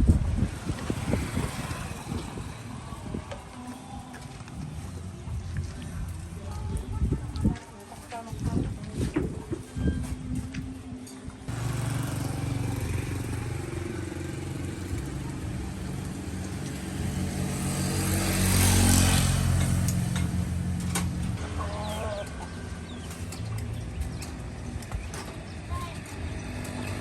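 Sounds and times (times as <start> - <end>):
vehicle engine running: 11.5 - 27.0.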